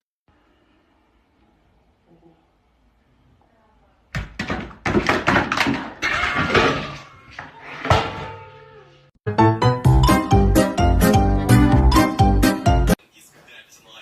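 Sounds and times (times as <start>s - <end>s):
loud thumps and knocks: 4.1s - 6.9s.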